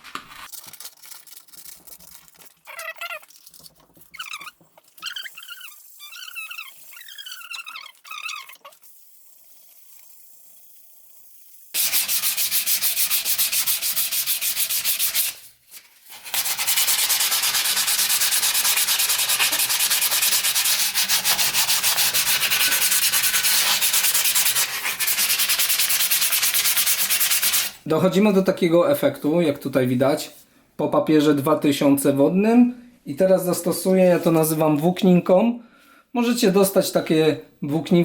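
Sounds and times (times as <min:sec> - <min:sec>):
sandpaper rubbing on metal: 0:00.5 - 0:08.5, 0:11.7 - 0:15.5, 0:16.1 - 0:27.8.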